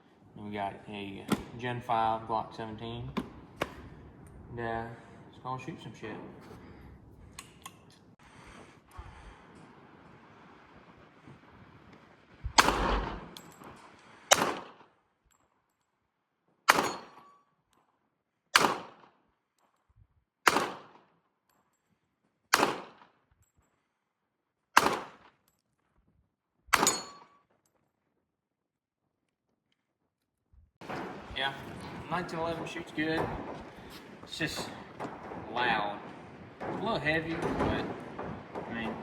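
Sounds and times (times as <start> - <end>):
pistol shots with echo: 1.2 - 2.2, 12.6 - 13.6, 14.2 - 14.9, 16.7 - 17.4, 18.5 - 19.1, 20.4 - 21.1, 22.5 - 23.1, 24.8 - 25.3, 26.7 - 27.3, 30.8 - 39.0.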